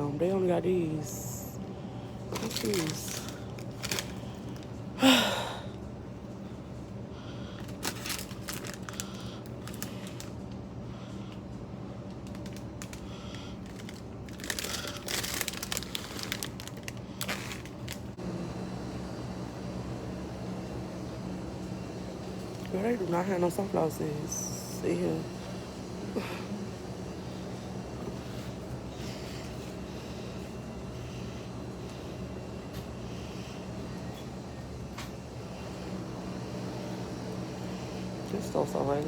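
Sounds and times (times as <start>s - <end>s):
steady low hum: 0.0s - 39.0s
plastic packets crinkling: 2.3s - 4.7s, 7.6s - 10.4s, 12.2s - 18.2s.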